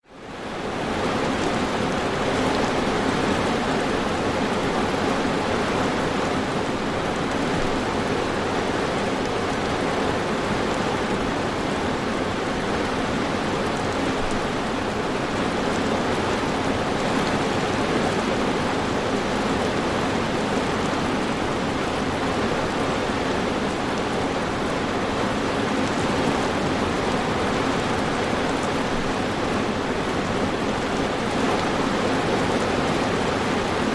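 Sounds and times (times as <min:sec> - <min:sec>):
dense rainfall: 0:00.0 - 0:33.9.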